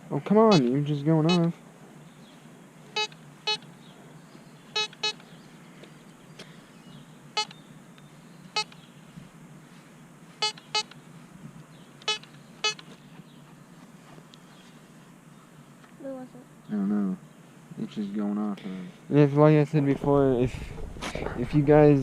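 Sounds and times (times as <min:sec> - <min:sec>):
metal detector beeping chirps: 0:00.5 - 0:01.5, 0:03.0 - 0:03.7, 0:04.7 - 0:05.3, 0:07.4 - 0:07.6, 0:08.5 - 0:08.8, 0:10.4 - 0:11.0, 0:12.0 - 0:12.9.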